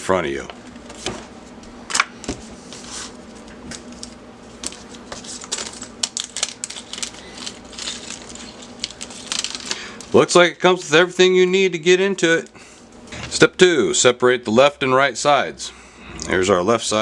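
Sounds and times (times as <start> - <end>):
faint steady hum: 0.0 - 17.0
plastic parts clicking and rattling: 5.5 - 9.8.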